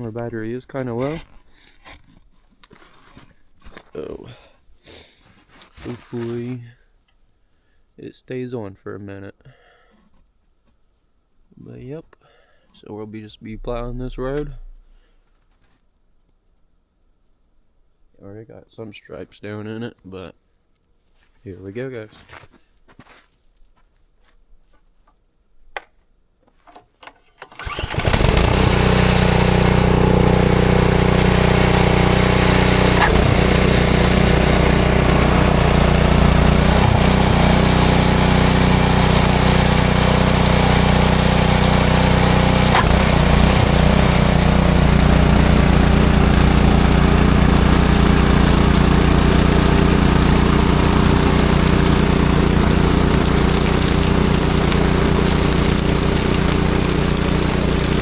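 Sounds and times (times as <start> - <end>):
snowblower engine running: 27.6 - 58.0.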